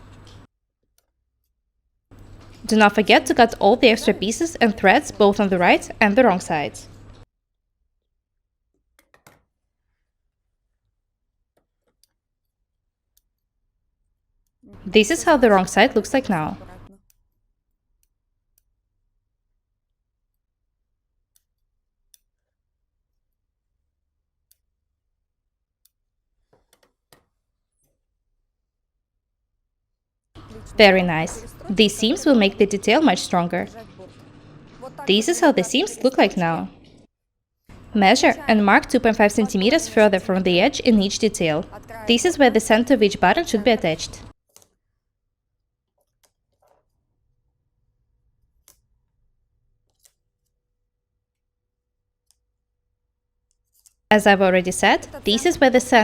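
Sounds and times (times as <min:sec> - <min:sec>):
low hum: 0:30.4 - 0:37.1.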